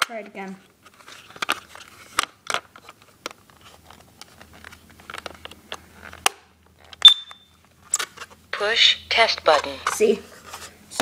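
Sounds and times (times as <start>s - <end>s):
detector high-pitched beep: 7.0s - 7.5s.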